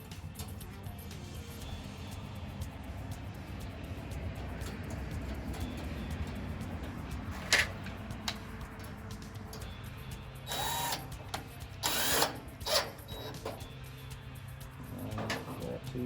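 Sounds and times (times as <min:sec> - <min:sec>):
metal hardware clicks: 0:04.1 - 0:13.7
cordless drill-driver running: 0:10.5 - 0:11.2, 0:11.8 - 0:13.6.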